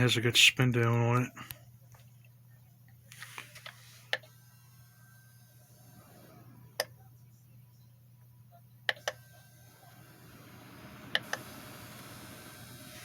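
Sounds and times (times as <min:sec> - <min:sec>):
heater fan spinning down: 0:04.2 - 0:07.2, 0:08.9 - 0:13.0.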